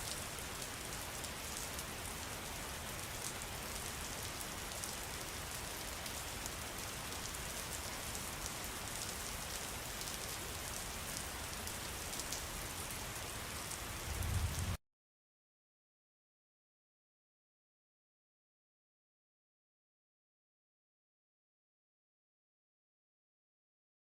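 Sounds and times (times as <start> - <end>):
steady rain falling: 0.0 - 14.8.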